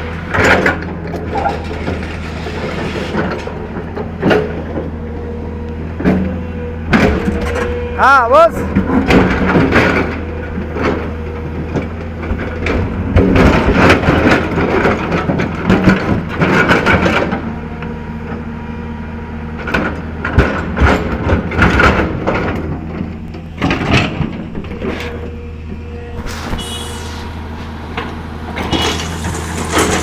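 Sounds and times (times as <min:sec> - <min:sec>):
excavator diesel engine running: 0:00.0 - 0:30.0
bucket scraping and knocking rock: 0:26.1 - 0:27.3.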